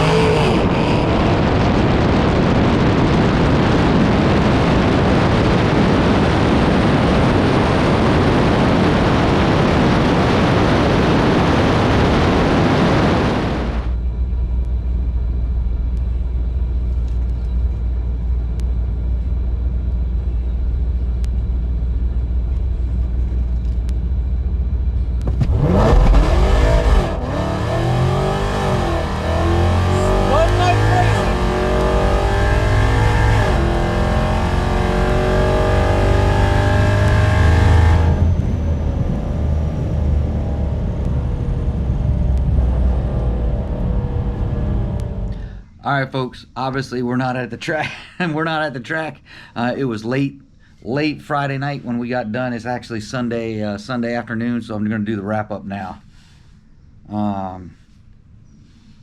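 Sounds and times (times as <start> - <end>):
engine at full throttle: 0.0 - 14.1, 24.4 - 45.6
low steady engine hum: 0.0 - 59.0.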